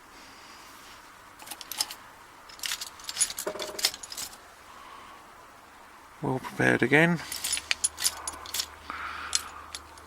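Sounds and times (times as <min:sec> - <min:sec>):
metal tools clinking on workbench: 0:01.4 - 0:04.4.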